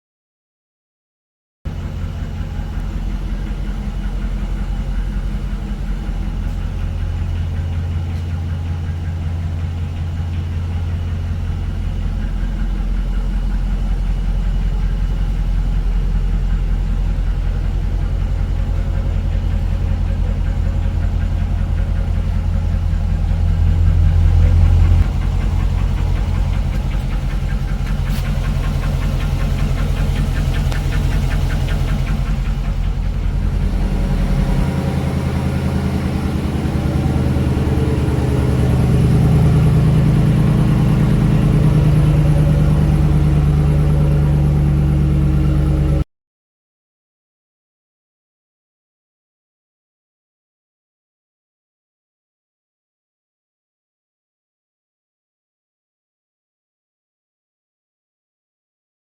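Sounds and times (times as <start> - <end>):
engine idling with ticking: 1.7 - 46.0.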